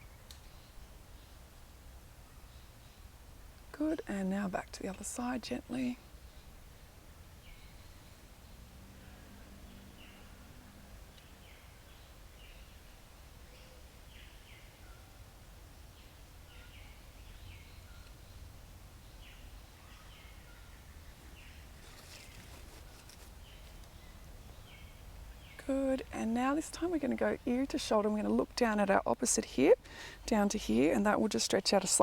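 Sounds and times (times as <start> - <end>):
low outdoor rumble: 0.0 - 13.5, 15.3 - 32.0
birds chirping: 3.8 - 32.0
brief rustle: 21.7 - 24.0.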